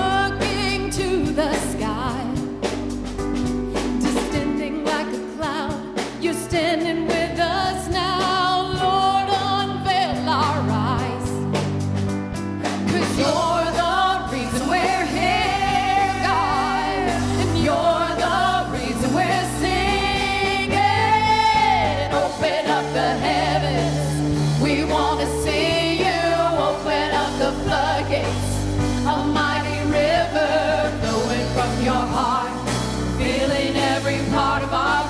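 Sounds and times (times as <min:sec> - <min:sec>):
band accompaniment with bass: 0:00.0 - 0:35.0
voices singing praise song: 0:12.9 - 0:35.0.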